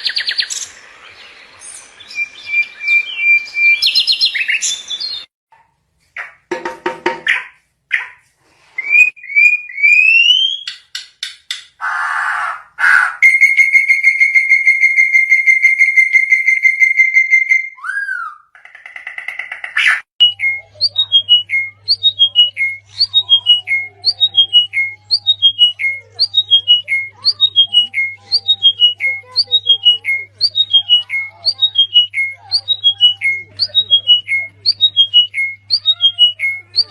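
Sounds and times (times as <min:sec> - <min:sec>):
bird whistle: 0:02.1 - 0:05.2, 0:11.8 - 0:18.5, 0:20.2 - 0:36.9
bird trilling: 0:11.8 - 0:36.9
descending bird call: 0:11.8 - 0:36.9.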